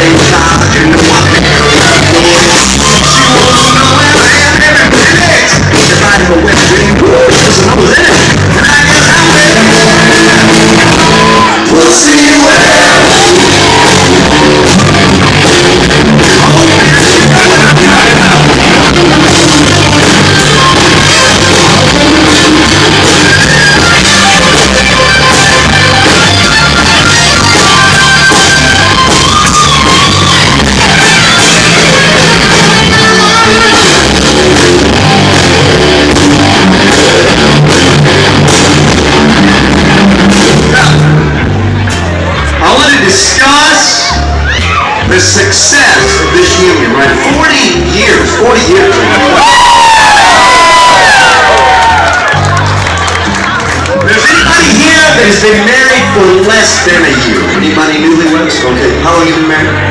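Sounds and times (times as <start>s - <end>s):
person singing: 0.0s - 38.4s
live rock band: 0.0s - 59.9s.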